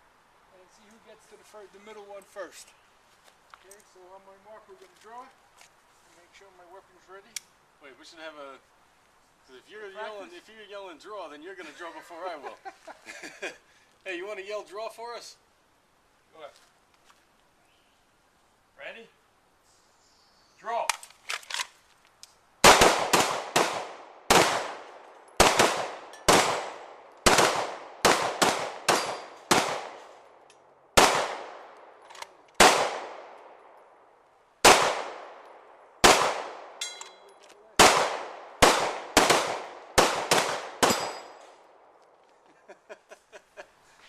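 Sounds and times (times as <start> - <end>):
handguns firing rapidly: 25.4 - 29.9, 37.8 - 41.2
bullets ringing on steel plates: 36.8 - 37.3, 40.9 - 41.4.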